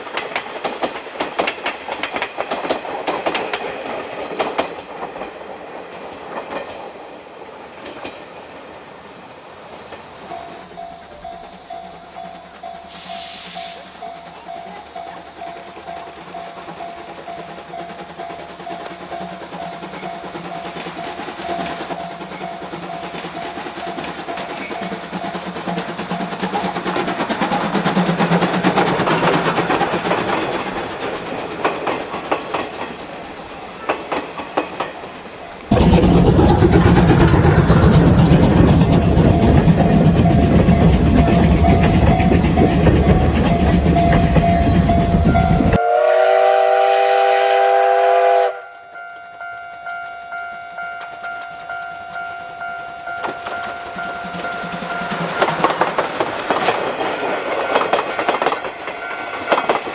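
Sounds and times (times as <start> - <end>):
steam locomotive exhaust beats: 0.0 - 59.9
train rumble with rail clatter: 0.0 - 59.9
steam locomotive whistle: 12.8 - 14.0, 39.5 - 49.4.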